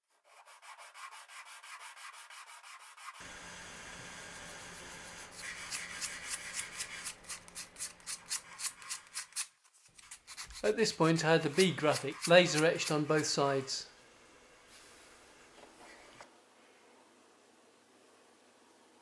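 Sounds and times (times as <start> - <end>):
hand-sanding wood: 0.1 - 3.3, 4.3 - 9.4, 10.0 - 13.7.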